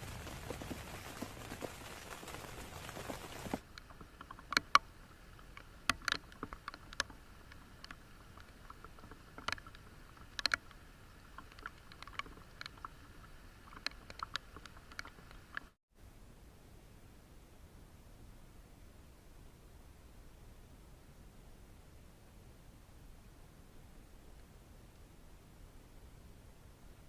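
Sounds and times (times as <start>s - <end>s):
heavy rain hissing: 0.0s - 3.6s.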